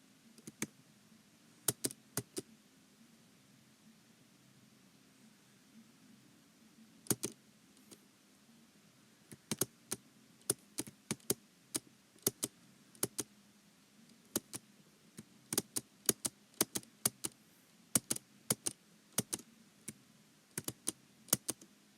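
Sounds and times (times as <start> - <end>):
keyboard typing clicks: 1.7 - 2.4, 7.1 - 7.4, 9.3 - 9.7, 10.4 - 11.4, 12.2 - 13.3, 14.3 - 14.6, 15.6 - 17.4, 18.0 - 19.4, 20.6 - 21.6.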